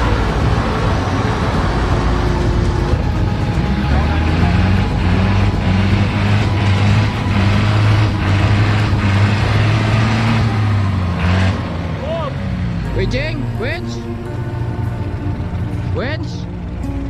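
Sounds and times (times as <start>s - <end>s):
engine knocks: 0.0s - 12.0s
engine running under load: 0.0s - 17.0s.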